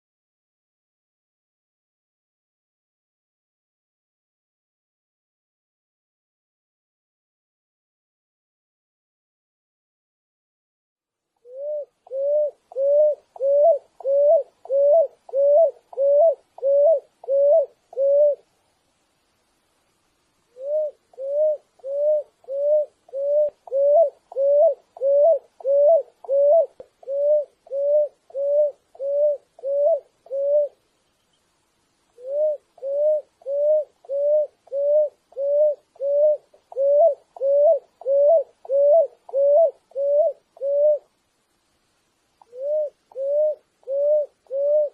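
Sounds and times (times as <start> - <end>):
dove cooing: 11.4 - 18.5, 20.5 - 30.8, 32.2 - 41.1, 42.4 - 44.9.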